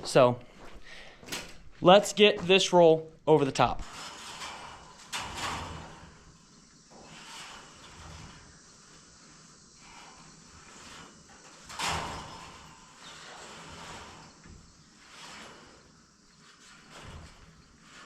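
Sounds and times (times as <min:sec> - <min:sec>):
wire mesh scraping and rustling: 0:03.8 - 0:18.0.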